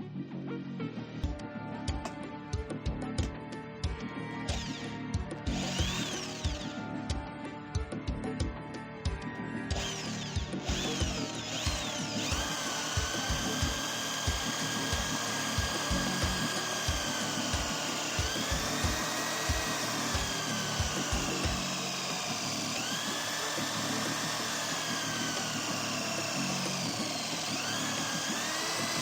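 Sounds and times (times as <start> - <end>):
washing machine motor whine: 9.7 - 29.0.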